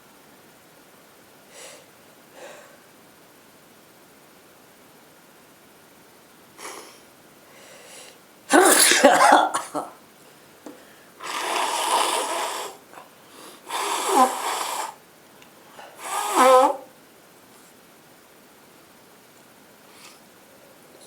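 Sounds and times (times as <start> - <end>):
faint breath: 1.5 - 2.9, 6.6 - 8.2, 10.3 - 15.0
person blowing nose: 6.6 - 7.0, 11.2 - 12.8, 13.5 - 15.0, 15.9 - 16.9
person sneezing: 8.5 - 10.0, 15.9 - 16.9.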